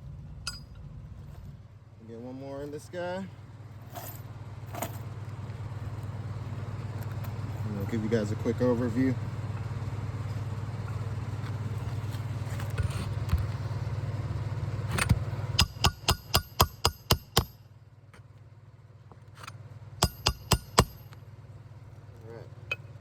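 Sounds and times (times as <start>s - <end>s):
steady low hum: 0.0s - 23.0s
hammer striking roofing nail: 15.6s - 17.6s, 20.0s - 21.1s.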